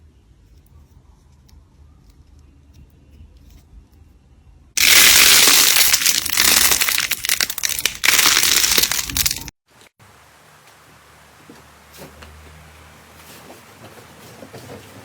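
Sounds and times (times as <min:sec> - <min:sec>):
slime crunching crackle: 0:04.8 - 0:09.5.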